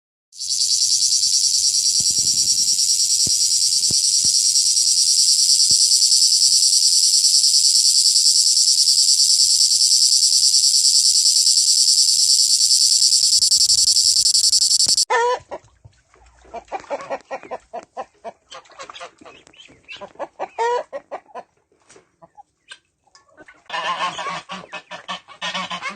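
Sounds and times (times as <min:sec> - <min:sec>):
cricket chirping trill: 0:00.4 - 0:15.1
chicken clucking: 0:16.5 - 0:21.6, 0:22.2 - 0:25.9
chicken squawking: 0:19.9 - 0:21.4, 0:23.8 - 0:25.9.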